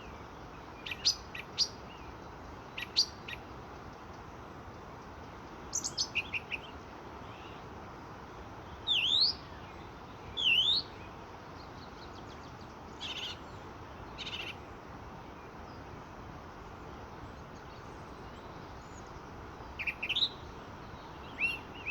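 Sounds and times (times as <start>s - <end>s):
steady background hiss: 0.0s - 21.9s
starling singing: 21.1s - 21.9s.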